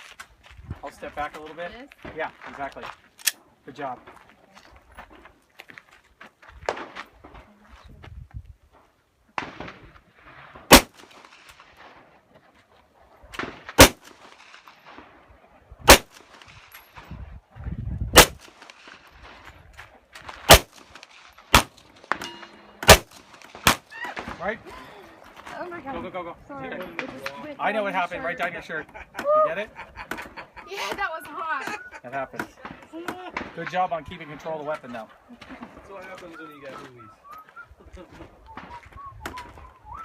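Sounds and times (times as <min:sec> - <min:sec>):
pistol shots: 0:10.6 - 0:12.0, 0:13.4 - 0:15.1, 0:15.9 - 0:16.7, 0:18.2 - 0:19.0, 0:20.4 - 0:24.4.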